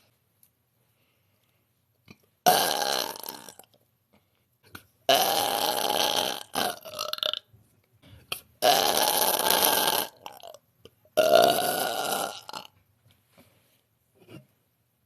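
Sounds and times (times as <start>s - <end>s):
woman belching loudly: 2.5s - 3.6s, 5.1s - 7.4s, 8.6s - 10.6s, 11.2s - 12.7s.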